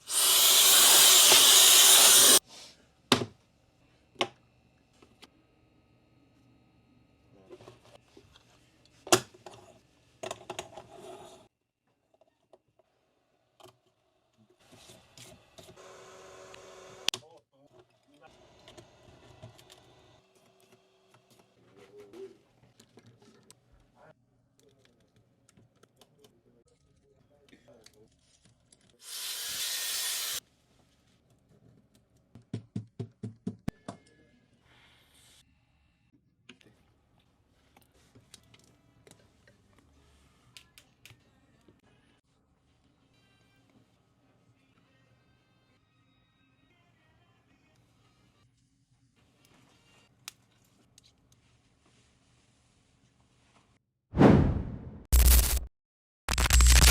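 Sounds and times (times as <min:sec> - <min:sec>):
air spray hiss: 0:00.0 - 0:02.4, 0:29.1 - 0:30.4.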